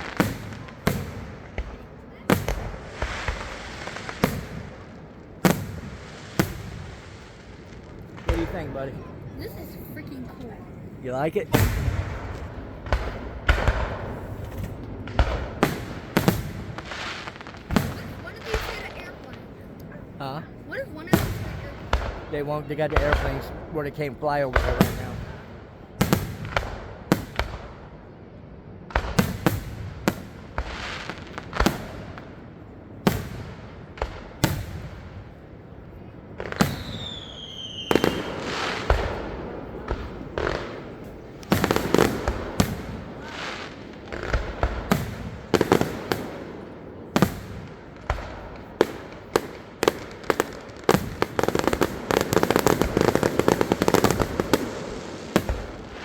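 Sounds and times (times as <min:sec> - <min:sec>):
rapid firework crackling: 0:00.0 - 0:27.9, 0:28.9 - 0:56.0
fireworks booming and popping: 0:00.0 - 0:28.2, 0:28.8 - 0:56.0
firework falling whistle: 0:36.6 - 0:39.2.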